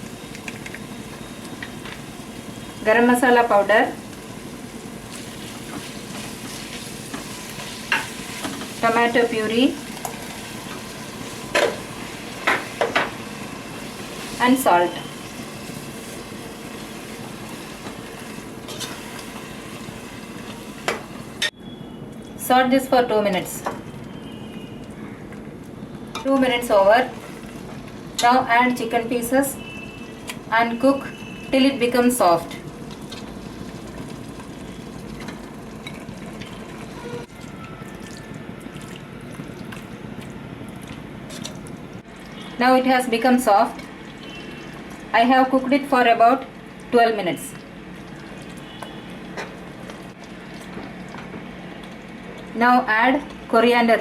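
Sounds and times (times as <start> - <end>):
food sizzling in hot oil: 0.0 - 21.5, 26.2 - 37.3.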